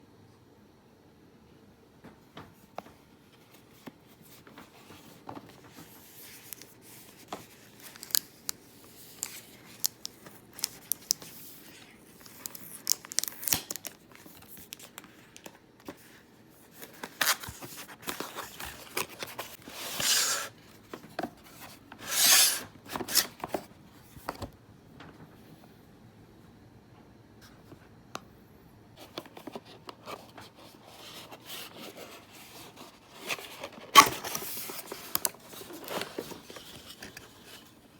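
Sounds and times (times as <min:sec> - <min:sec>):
packaging rustling and tearing: 0:04.5 - 0:16.1, 0:16.7 - 0:21.2, 0:29.0 - 0:37.9.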